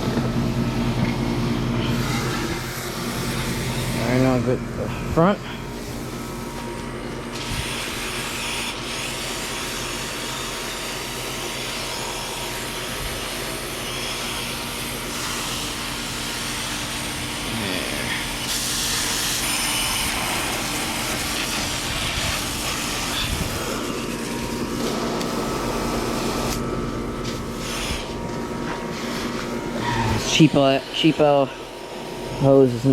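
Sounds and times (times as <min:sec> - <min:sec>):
hose water spraying on metal fins: 0:07.2 - 0:31.3.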